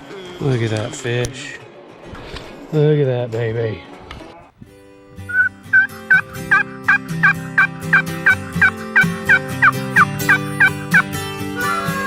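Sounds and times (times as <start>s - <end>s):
held chords: 5.2s - 11.1s.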